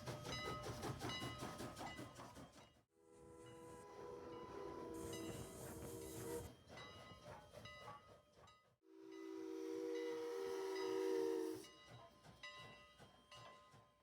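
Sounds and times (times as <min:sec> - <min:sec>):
train hiss and running noise: 0:00.0 - 0:14.0
steam locomotive chime whistle: 0:03.0 - 0:08.1, 0:08.9 - 0:14.0.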